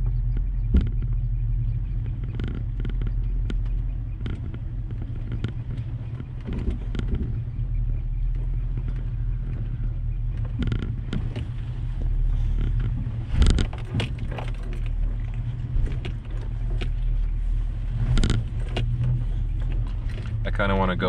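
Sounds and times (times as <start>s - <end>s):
truck engine at low revs: 0.0s - 21.0s
truck knocking over rocks: 12.4s - 17.0s.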